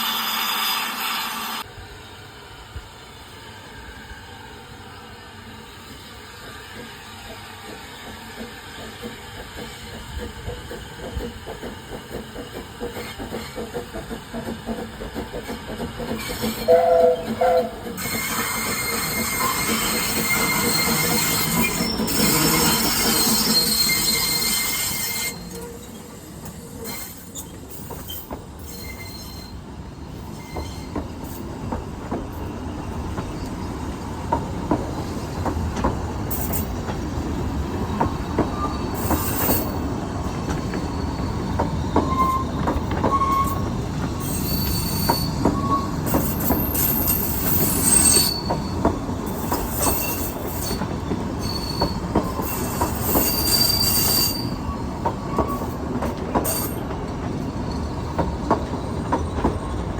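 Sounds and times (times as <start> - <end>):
train rolling rumble: 1.6 - 59.9
rail joint clicks: 5.8 - 59.9
wheel flanges squealing: 16.1 - 29.6, 38.3 - 55.8.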